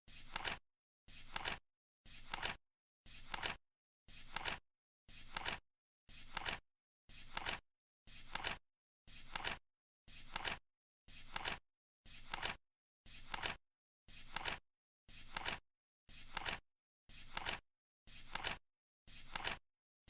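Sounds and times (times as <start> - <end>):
flip clock card flipping: 0.3 - 0.6, 2.2 - 2.6, 3.3 - 3.6, 4.3 - 4.6, 5.3 - 5.6, 6.3 - 6.6, 7.3 - 7.6, 8.3 - 8.6, 10.3 - 10.6, 12.3 - 12.6, 15.3 - 15.6, 16.3 - 16.6, 17.3 - 17.6, 19.3 - 19.6.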